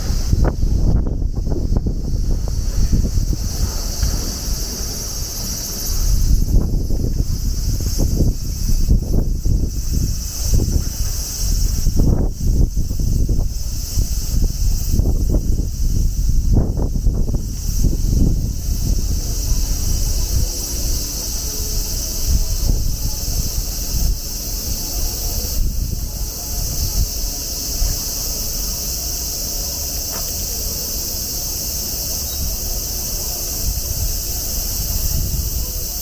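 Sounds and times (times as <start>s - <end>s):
cicadas shrilling: 0.0s - 36.0s.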